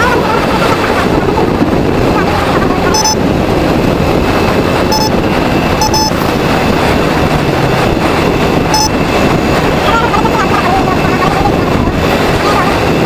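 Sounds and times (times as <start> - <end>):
wind and road noise on motorcycle: 0.0 - 13.0
short high beeps: 2.9 - 3.2, 4.9 - 5.1, 5.8 - 6.2, 8.7 - 8.9.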